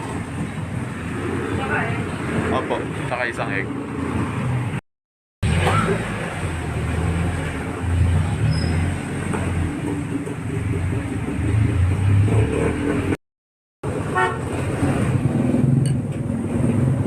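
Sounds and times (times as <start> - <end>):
vehicle engines rumbling: 0.0 - 4.8, 5.4 - 13.2, 13.8 - 17.0
car horn toot: 14.1 - 14.5.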